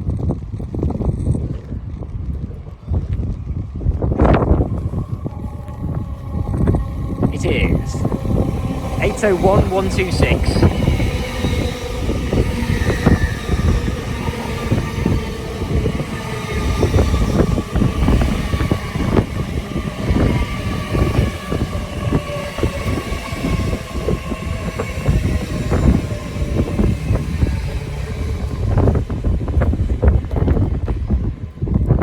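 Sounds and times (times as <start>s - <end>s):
electric train rumbling: 0.0s - 32.0s
faint train whine: 0.6s - 32.0s.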